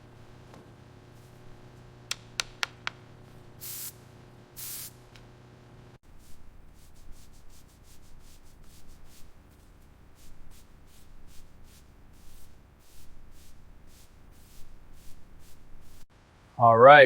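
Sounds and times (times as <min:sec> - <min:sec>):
abrasive rubbing strokes: 0:06.2 - 0:16.1.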